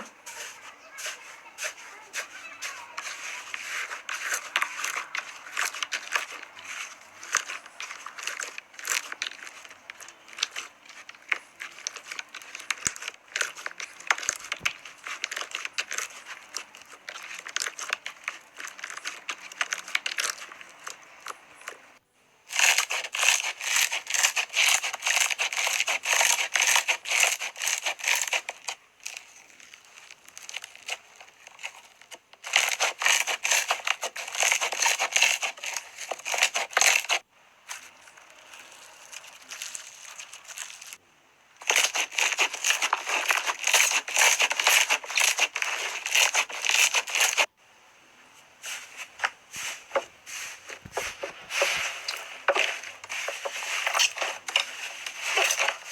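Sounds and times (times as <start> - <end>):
slime crackling and popping: 3.2 - 21.8.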